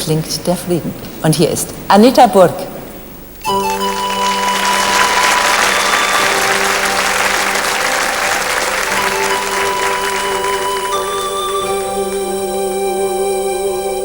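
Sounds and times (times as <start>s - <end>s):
slow instrumental music: 3.3s - 14.0s
audience applauding: 3.4s - 12.0s.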